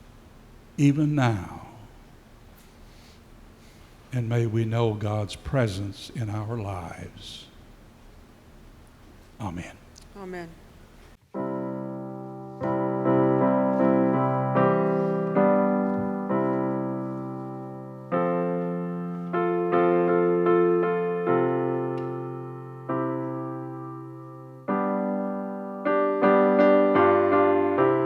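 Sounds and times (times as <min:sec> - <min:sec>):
piano slow chords: 0:09.1 - 0:28.0.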